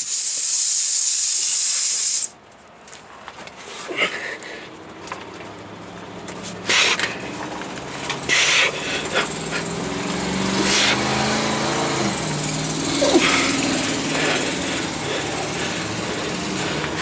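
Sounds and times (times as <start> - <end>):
short bursts of hissing: 0.0 - 2.4
engine running steadily: 4.5 - 17.0.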